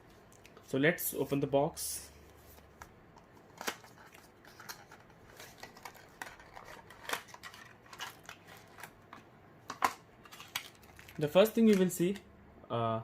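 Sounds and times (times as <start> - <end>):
packaging clicks and scrapes: 3.5 - 11.8.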